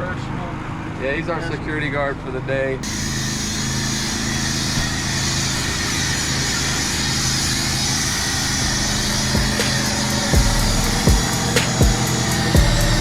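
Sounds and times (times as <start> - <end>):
pressure washer motor hum: 2.8 - 13.0
water spray hissing: 2.8 - 13.0.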